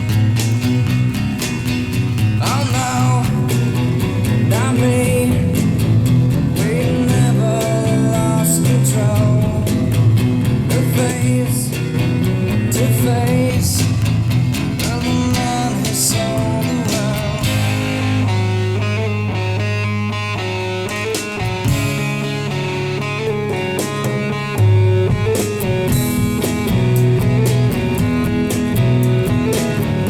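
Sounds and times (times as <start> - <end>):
blues-rock music over loudspeakers: 0.0 - 30.0.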